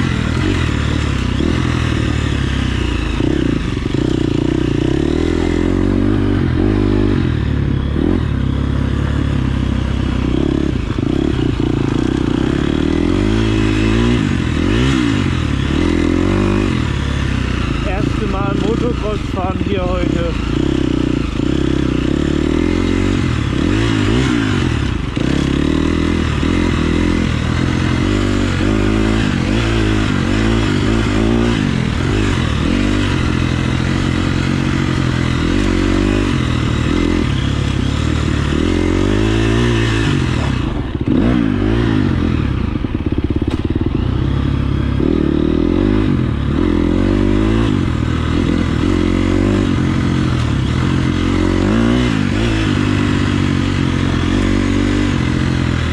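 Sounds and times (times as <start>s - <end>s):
dirt bike engine revving: 0.0s - 55.9s.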